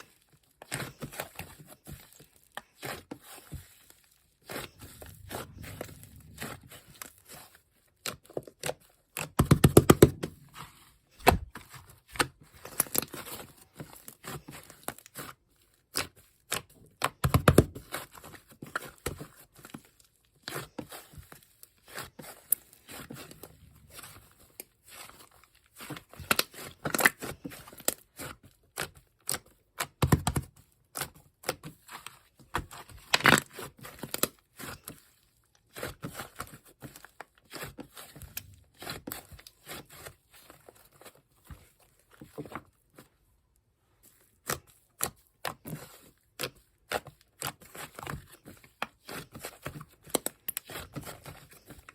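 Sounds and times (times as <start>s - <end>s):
slime soft tearing: 4.5s - 7.0s.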